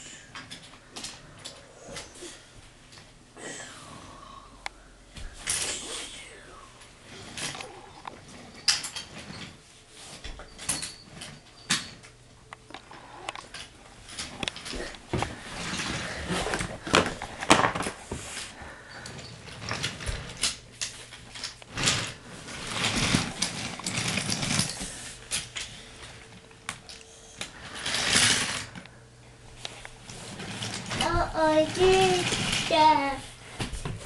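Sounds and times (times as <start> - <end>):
plastic toy track clattering: 19.5 - 25.4, 27.7 - 28.7, 30.3 - 33.2.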